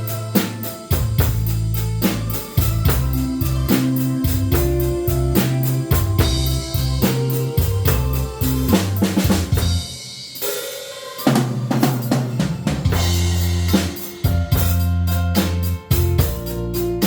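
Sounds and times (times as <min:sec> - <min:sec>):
keyboard chords: 0:00.0 - 0:10.4, 0:11.5 - 0:17.0
drum kit beat: 0:00.0 - 0:17.0
bass line: 0:00.9 - 0:10.0, 0:12.9 - 0:17.0.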